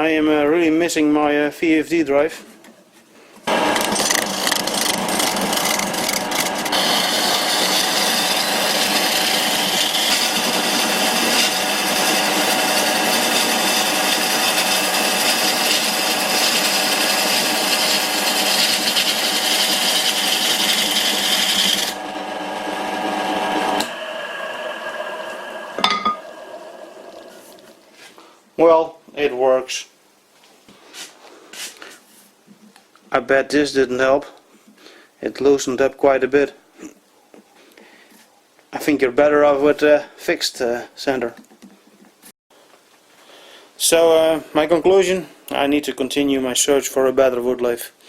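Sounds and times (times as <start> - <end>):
gouge rasping on spinning wood: 3.5 - 25.9
lathe humming: 3.5 - 27.8.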